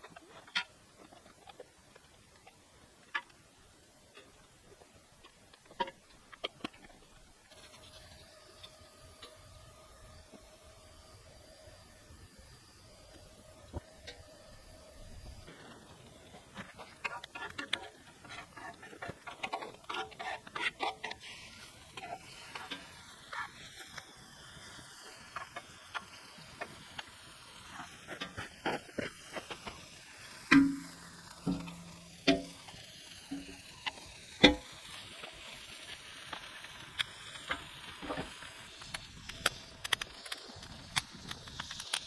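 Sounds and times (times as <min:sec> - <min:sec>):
food sizzling on a griddle: 0:04.2 - 0:42.0
utensil knocking on griddle: 0:30.5 - 0:32.6.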